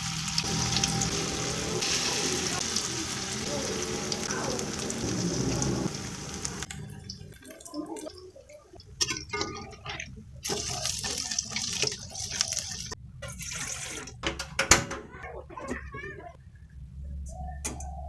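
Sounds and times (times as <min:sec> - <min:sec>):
water running and splashing: 0:00.0 - 0:14.2.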